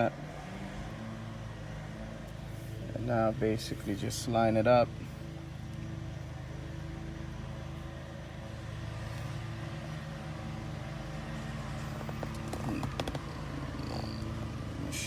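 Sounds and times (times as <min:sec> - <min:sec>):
car cabin hum: 0:10.7 - 0:15.0.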